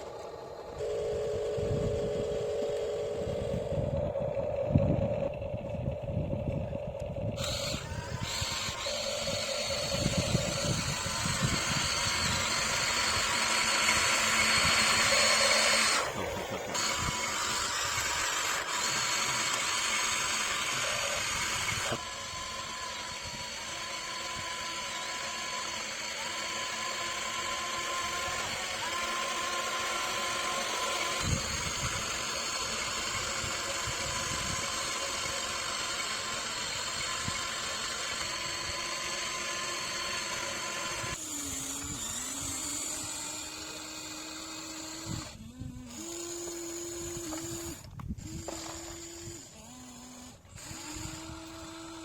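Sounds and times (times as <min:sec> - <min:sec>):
electric motors and gears whining: 0:00.0 - 0:52.0.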